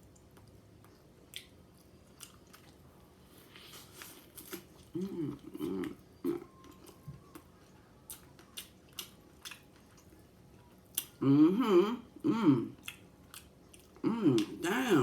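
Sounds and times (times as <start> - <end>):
close chewing and mouth clicks: 0.0 - 7.5, 8.1 - 11.2, 12.7 - 14.6
person humming mm: 4.9 - 6.5, 11.2 - 12.8, 14.0 - 15.0.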